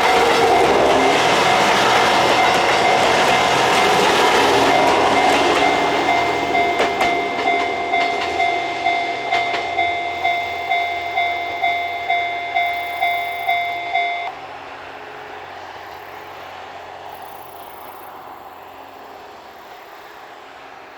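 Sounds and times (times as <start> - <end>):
level-crossing alarm bell ringing: 0.0 - 14.3
train wheel clicks: 0.0 - 14.3
rumble of departing train: 0.0 - 20.9.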